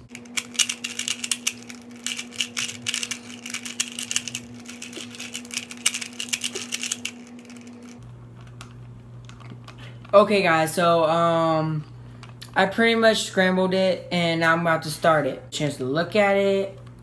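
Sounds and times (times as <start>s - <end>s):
puzzle cube clicking and rattling: 0.1s - 9.8s.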